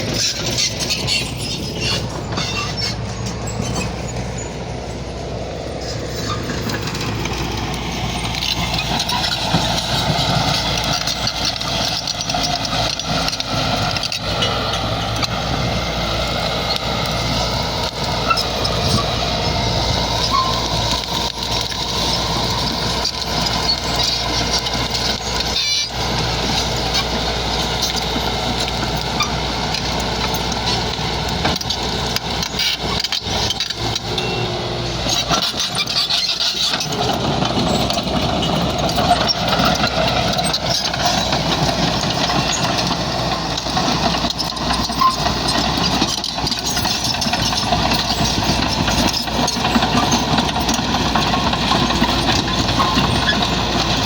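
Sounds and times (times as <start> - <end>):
bulldozer diesel engine running: 0.0 - 54.0
knocks and clatter: 5.9 - 19.3, 19.9 - 54.0.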